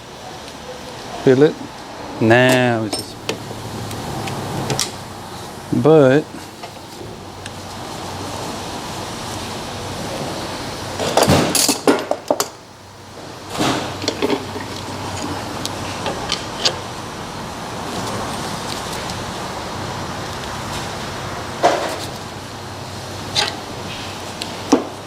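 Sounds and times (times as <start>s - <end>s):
steady background hiss: 0.0s - 25.0s
tools and metal parts clinking: 2.5s - 3.4s, 11.2s - 12.6s, 13.9s - 16.8s.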